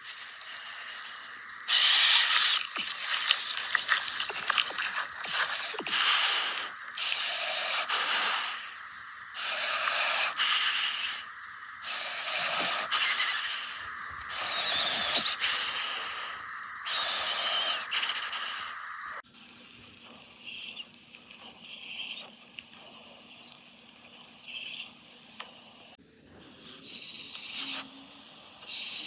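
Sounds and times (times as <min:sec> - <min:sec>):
animal snoring: 0:00.0 - 0:08.8, 0:09.4 - 0:18.8.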